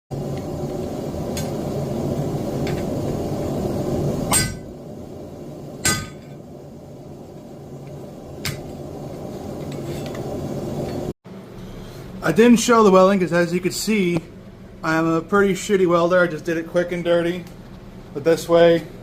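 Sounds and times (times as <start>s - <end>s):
low hum: 0.1s - 18.1s
hammer striking steel: 4.3s - 4.7s, 5.8s - 6.4s.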